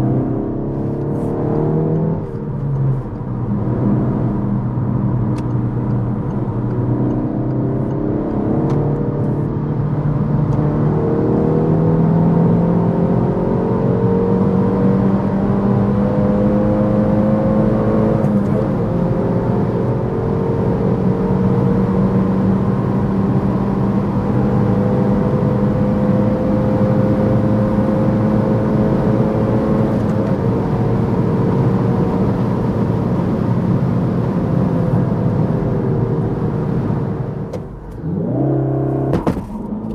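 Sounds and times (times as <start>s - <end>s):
road and wind noise: 0.0s - 39.9s
car engine pulling hard: 34.8s - 39.9s.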